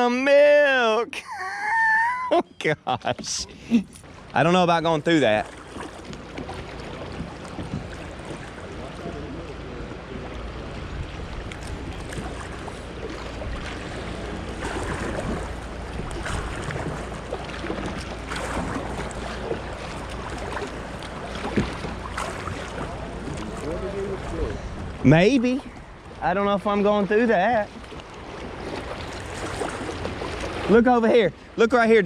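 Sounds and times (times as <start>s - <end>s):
water sloshing and splashing: 3.1s - 32.0s
wind rumble on microphone: 5.9s - 26.2s.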